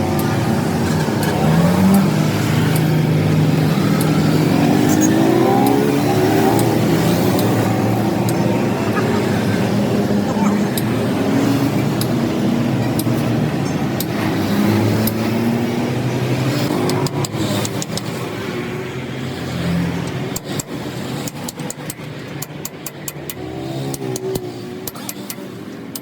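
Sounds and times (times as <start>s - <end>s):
vehicle engine running: 0.0s - 20.4s.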